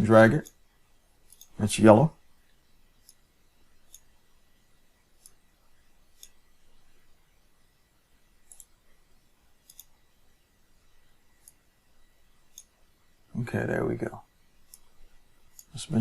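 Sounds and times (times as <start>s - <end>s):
computer mouse clicks: 1.2s - 1.6s, 3.0s - 4.1s, 5.2s - 5.4s, 6.1s - 6.5s, 8.4s - 8.8s, 9.6s - 10.0s, 11.3s - 11.7s, 12.4s - 12.8s, 14.6s - 15.8s.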